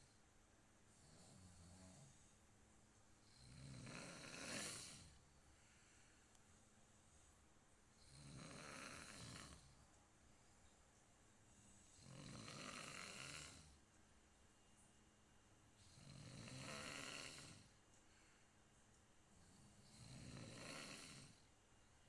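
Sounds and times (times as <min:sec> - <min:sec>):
person snoring: 0:01.0 - 0:02.3, 0:03.2 - 0:05.2, 0:08.0 - 0:09.8, 0:11.8 - 0:13.8, 0:15.8 - 0:17.7, 0:19.4 - 0:21.4.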